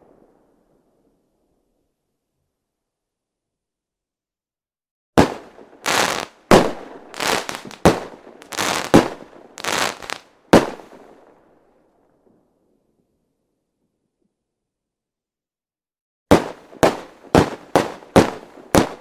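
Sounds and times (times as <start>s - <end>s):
fireworks crackling burst: 5.2s - 11.0s
fireworks bangs: 5.2s - 11.1s, 16.3s - 19.0s.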